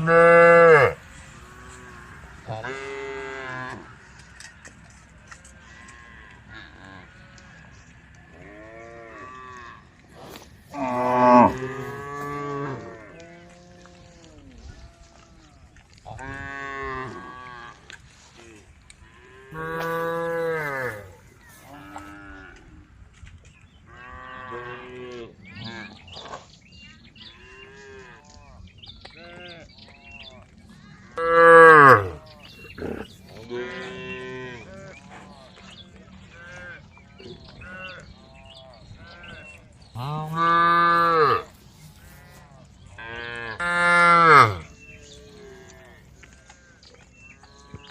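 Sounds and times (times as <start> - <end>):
cows mooing: 0.0 - 3.9, 8.4 - 13.9, 19.5 - 22.6, 31.2 - 34.8, 40.0 - 42.4, 43.0 - 46.0.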